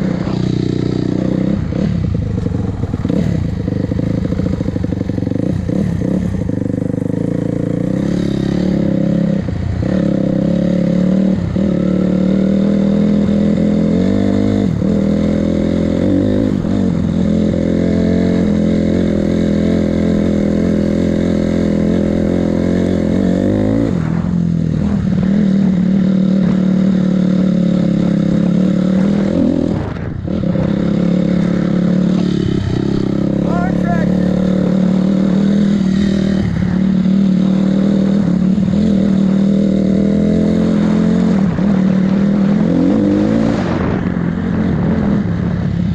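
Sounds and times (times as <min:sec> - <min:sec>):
dirt bike engine running: 0:00.0 - 0:45.9.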